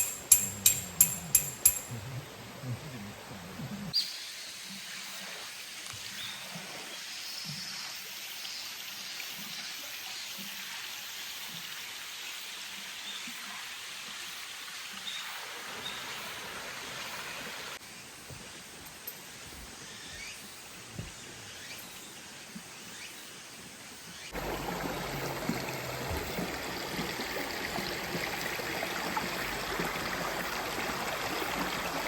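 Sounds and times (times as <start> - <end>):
mountain stream rushing: 24.3 - 32.0.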